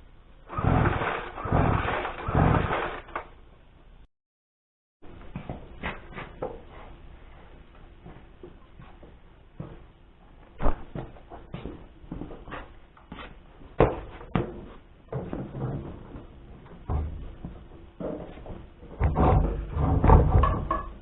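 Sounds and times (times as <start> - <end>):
knocking and clattering: 13.8 - 21.0.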